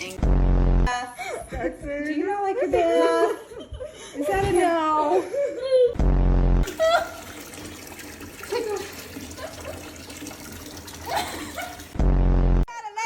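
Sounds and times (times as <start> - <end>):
tap water running in bath: 0.0 - 0.2, 6.6 - 12.0.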